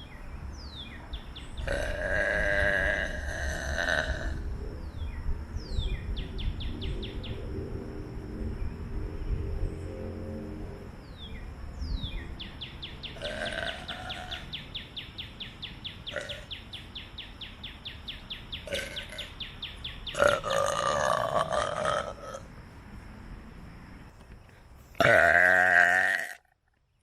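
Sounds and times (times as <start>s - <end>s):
person burping: 1.6s - 4.4s, 13.2s - 14.4s, 18.7s - 19.3s, 20.2s - 22.5s, 25.0s - 26.6s.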